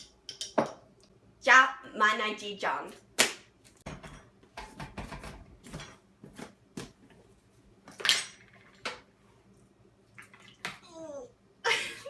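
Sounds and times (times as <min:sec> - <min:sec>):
dishes and utensils clattering: 0:03.8 - 0:06.1.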